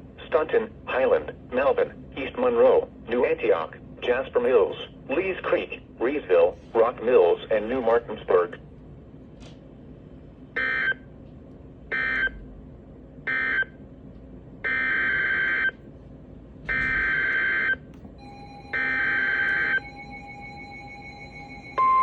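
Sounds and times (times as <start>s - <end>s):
faint steady tone: 18.0s - 22.0s.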